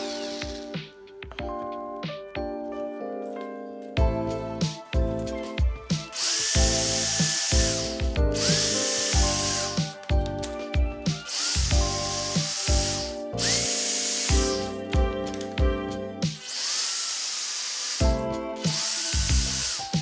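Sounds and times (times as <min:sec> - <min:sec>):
power drill whining: 0:00.0 - 0:00.8, 0:06.1 - 0:10.6, 0:11.2 - 0:14.8, 0:16.4 - 0:20.0
background music: 0:00.0 - 0:20.0.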